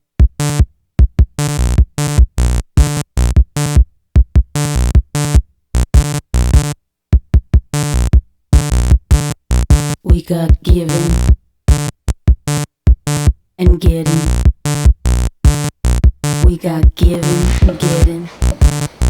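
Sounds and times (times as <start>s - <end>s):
drum-machine beat: 12.3s - 14.1s, 15.6s - 19.0s.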